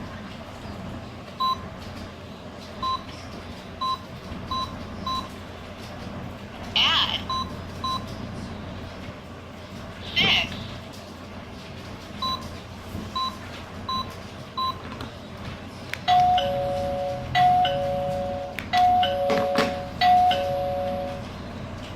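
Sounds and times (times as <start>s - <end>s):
doorbell ding-dong chime: 16.1s - 21.3s.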